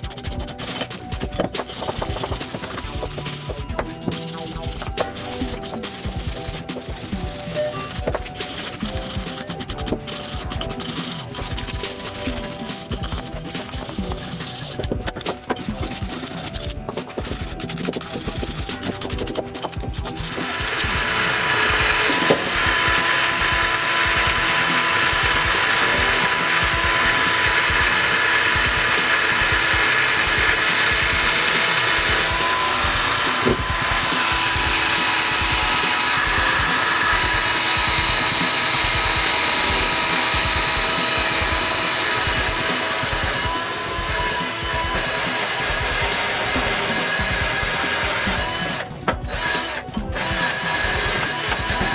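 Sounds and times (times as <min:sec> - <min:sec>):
background music with a beat: 0:00.0 - 0:51.9
power tool whining: 0:00.0 - 0:51.9.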